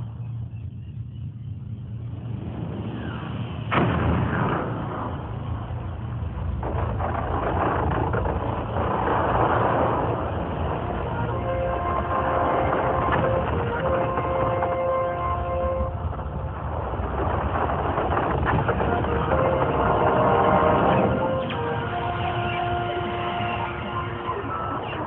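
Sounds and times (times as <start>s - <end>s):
steady low rumble: 0.0s - 25.0s
firework bang: 2.9s - 14.6s, 15.7s - 23.4s
fireworks crackling: 3.7s - 25.0s.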